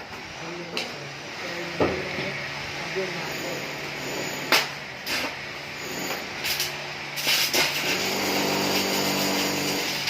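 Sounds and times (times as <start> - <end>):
welding arc crackling hiss: 4.3 - 10.0.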